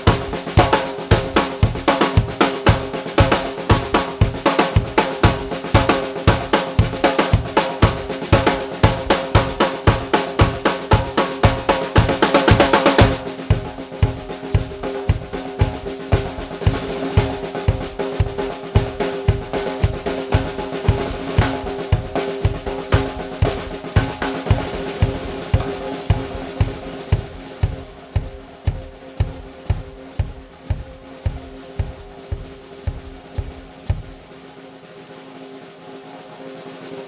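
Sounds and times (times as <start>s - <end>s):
bass drum beat: 0.0s - 34.3s
ringing snare drum hits: 0.0s - 34.3s.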